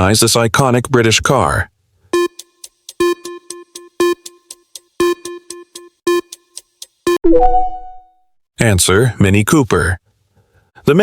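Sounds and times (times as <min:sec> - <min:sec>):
timer ticking: 0:02.2 - 0:08.0
rising three-note chime: 0:07.3 - 0:08.2.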